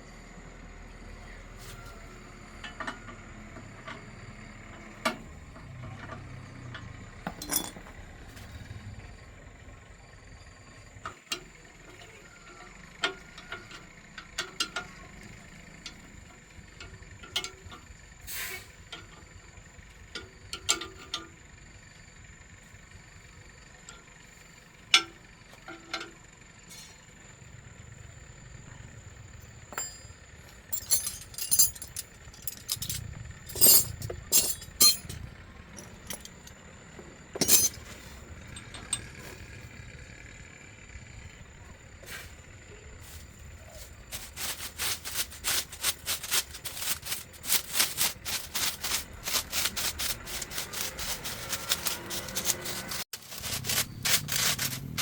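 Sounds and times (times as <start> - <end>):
metallic clinks of hand tools: 7.3 - 7.8, 29.7 - 36.5, 37.3 - 39.3, 44.1 - 55.0.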